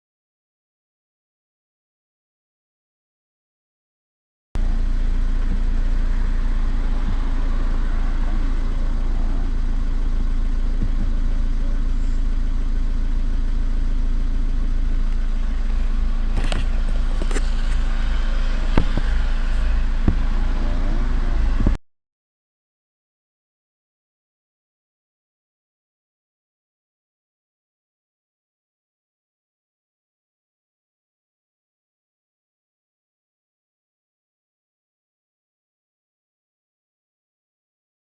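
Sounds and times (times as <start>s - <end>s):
diesel engine idling: 4.6s - 21.8s.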